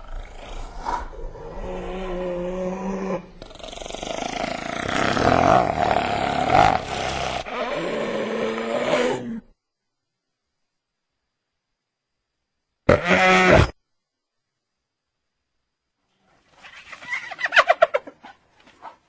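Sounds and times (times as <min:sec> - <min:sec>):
hyena moaning call: 0:00.0 - 0:09.5
hyena rasping growl: 0:00.0 - 0:09.5.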